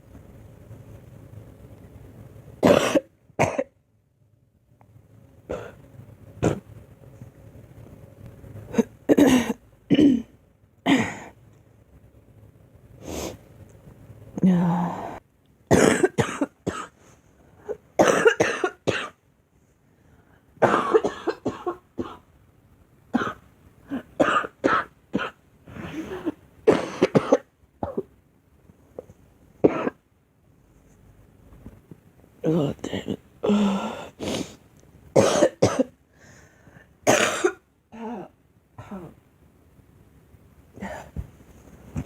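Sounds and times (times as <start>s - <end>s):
girl coughing: 2.6s - 3.7s, 8.7s - 10.3s, 10.9s - 11.3s, 15.7s - 16.9s, 18.0s - 19.2s, 20.6s - 22.2s, 23.2s - 25.4s, 26.0s - 28.1s, 29.7s - 30.0s, 35.2s - 35.9s, 37.1s - 39.2s.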